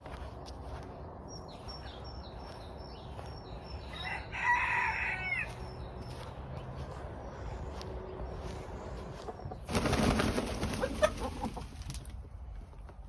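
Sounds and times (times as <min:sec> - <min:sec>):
small birds chirping: 0:00.0 - 0:11.8
rooster crowing: 0:03.9 - 0:05.7.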